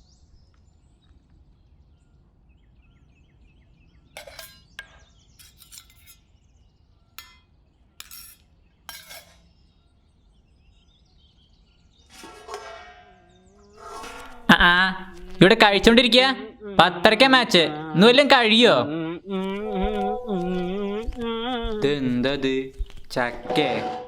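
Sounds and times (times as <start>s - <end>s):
small birds chirping: 0.0s - 18.6s, 19.2s - 23.4s
hard objects clinking: 4.2s - 6.2s, 7.2s - 9.5s.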